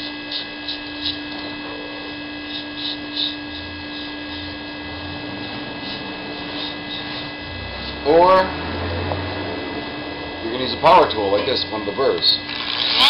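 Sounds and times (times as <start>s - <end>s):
electrical hum: 0.0s - 13.0s
chisel shaving ice: 12.5s - 13.0s.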